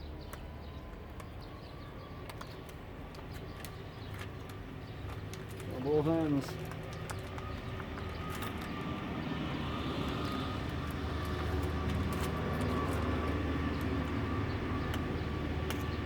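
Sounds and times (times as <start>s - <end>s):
engine drone: 4.4s - 16.0s.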